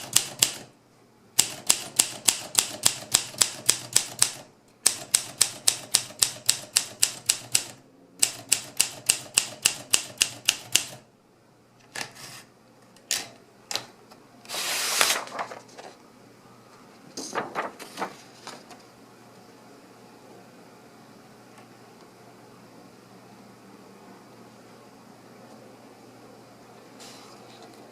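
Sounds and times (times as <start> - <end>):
typewriter keystrokes: 0.0 - 0.7, 1.4 - 11.0.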